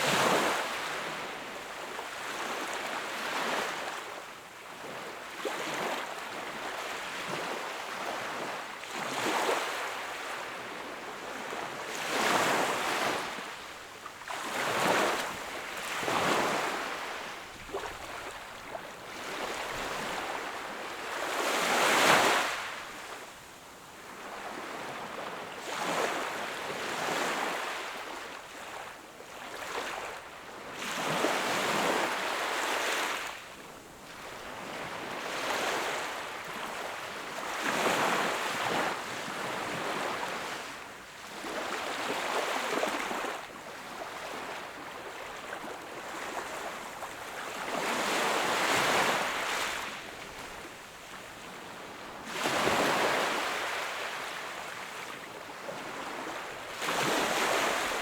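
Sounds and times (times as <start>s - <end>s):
sea waves breaking on shore: 34.2s - 58.0s.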